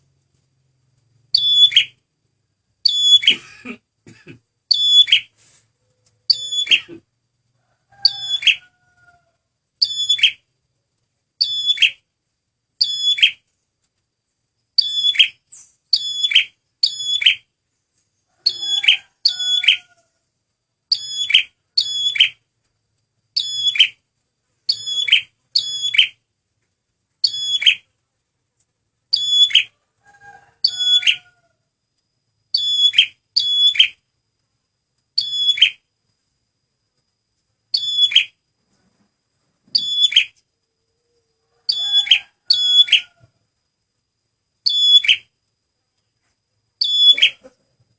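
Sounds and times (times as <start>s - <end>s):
bird sharp high chirps: 1.4s - 2.0s, 2.8s - 3.4s, 4.7s - 5.3s, 6.3s - 6.9s, 8.0s - 8.7s, 9.8s - 10.4s, 11.4s - 12.0s, 12.8s - 13.4s, 14.8s - 17.5s, 20.9s - 22.4s, 23.4s - 24.0s, 24.7s - 26.2s, 27.2s - 27.9s, 29.1s - 29.7s, 32.5s - 34.0s, 35.2s - 35.8s, 37.7s - 38.4s, 39.8s - 40.4s, 41.7s - 43.1s, 44.6s - 45.3s, 46.8s - 47.5s.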